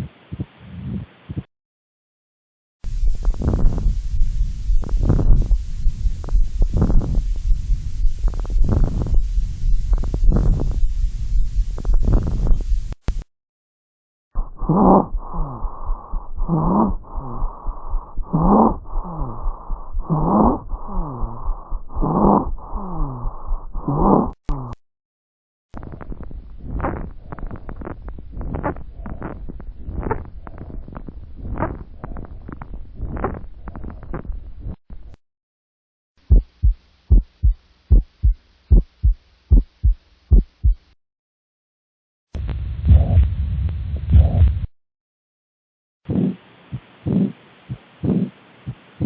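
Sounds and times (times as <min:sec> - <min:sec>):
heartbeat through stethoscope: 0:02.9 - 0:13.2, 0:14.4 - 0:24.7, 0:25.8 - 0:34.8, 0:36.2 - 0:41.0, 0:42.4 - 0:44.7, 0:46.1 - 0:48.9
wheezing tones: 0:03.0 - 0:12.7, 0:14.4 - 0:24.8
harsh breathing through stethoscope: 0:14.4 - 0:24.4.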